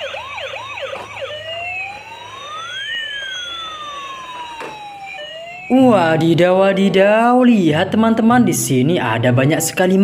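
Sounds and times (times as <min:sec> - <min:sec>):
second siren tone: 0:00.0 - 0:06.2
siren yelping and wailing: 0:00.0 - 0:07.5.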